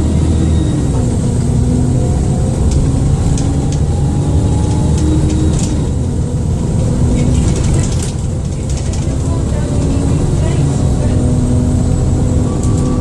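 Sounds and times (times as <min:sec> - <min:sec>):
bus diesel engine rumbling: 0:00.0 - 0:13.0
body clicks and rattles: 0:02.6 - 0:03.9, 0:04.6 - 0:05.8, 0:06.6 - 0:10.6.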